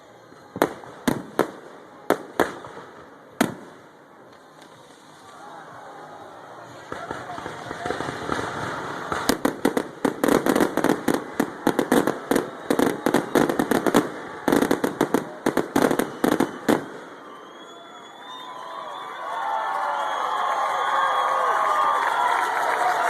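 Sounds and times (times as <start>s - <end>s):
faint background noise: 0.0s - 23.0s
fireworks bangs and crackles: 0.3s - 5.8s, 6.4s - 18.4s.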